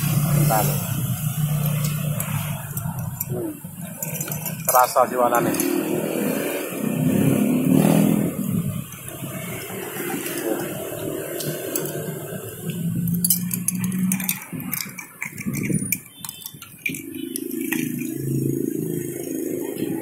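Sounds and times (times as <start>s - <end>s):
spoons and ice clinking in glasses: 1.5s - 6.0s, 8.8s - 20.0s.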